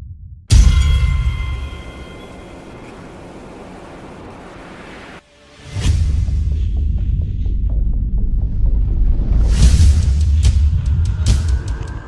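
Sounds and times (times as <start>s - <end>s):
deep low rumbling drone: 6.0s - 12.0s.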